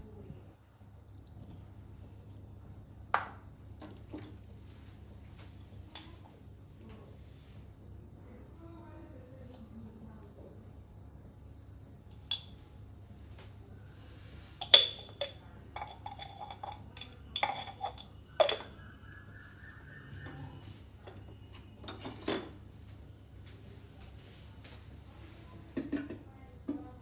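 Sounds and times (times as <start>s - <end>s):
hard objects clinking: 14.6s - 18.8s.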